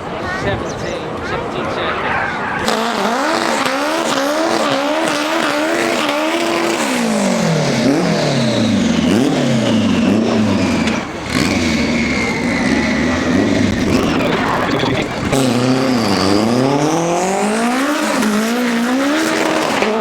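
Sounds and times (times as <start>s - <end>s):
performance car engine revving: 2.0s - 20.0s
faint tyre squeal: 10.6s - 16.8s.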